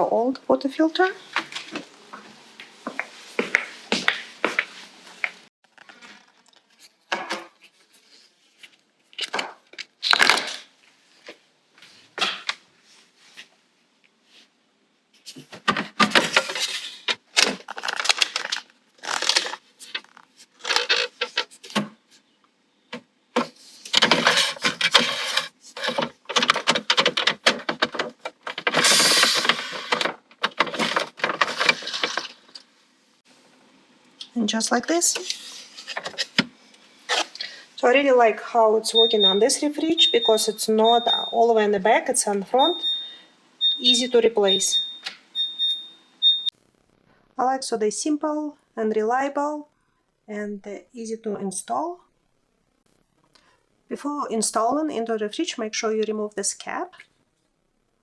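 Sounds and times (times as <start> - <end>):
plastic parts clicking and knocking: 15.5 - 22.0, 22.9 - 32.6.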